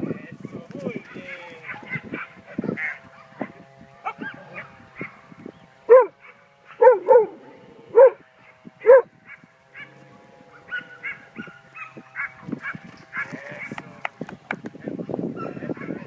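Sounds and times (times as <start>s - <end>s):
dog barking: 5.9s - 7.4s, 8.0s - 8.2s, 8.8s - 9.1s, 10.6s - 13.3s.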